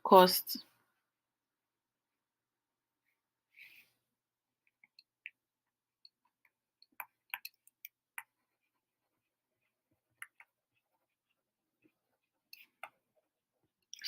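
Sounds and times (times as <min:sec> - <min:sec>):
faint clicks and taps: 0:04.6 - 0:14.0.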